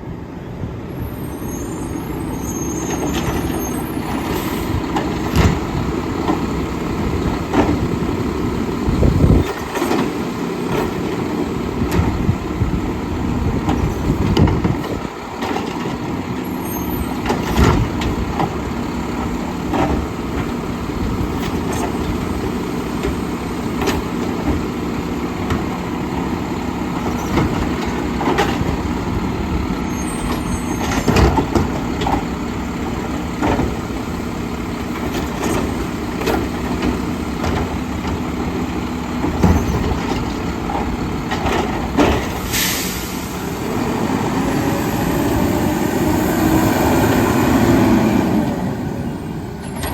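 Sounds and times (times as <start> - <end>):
garbage truck diesel engine running: 0.0 - 49.9
knocks and clanks: 4.1 - 8.1, 9.0 - 12.4, 17.1 - 20.6, 27.0 - 28.9, 30.2 - 32.4, 33.3 - 34.0, 34.8 - 38.4, 39.1 - 42.5.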